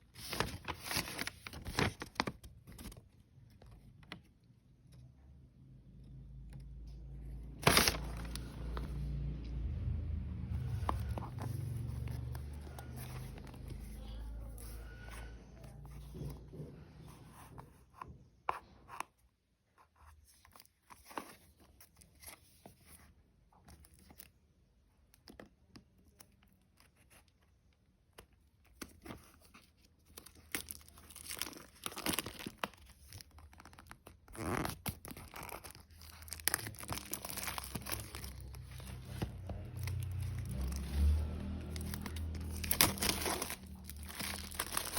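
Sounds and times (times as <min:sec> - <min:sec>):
packaging tearing and crinkling: 0:00.2 - 0:03.0, 0:07.6 - 0:08.9, 0:30.1 - 0:44.9.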